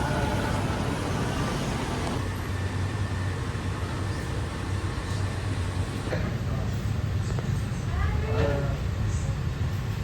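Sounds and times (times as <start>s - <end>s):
engine humming: 0.0s - 6.1s
road traffic noise: 0.0s - 10.0s.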